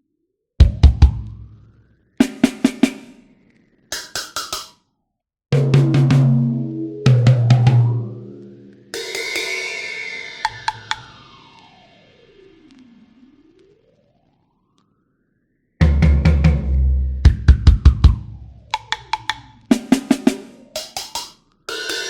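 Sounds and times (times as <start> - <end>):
snare drum fills: 2.2 - 3.2, 15.8 - 22.0
cymbal crash: 8.3 - 11.8
low tom hits: 15.8 - 18.4.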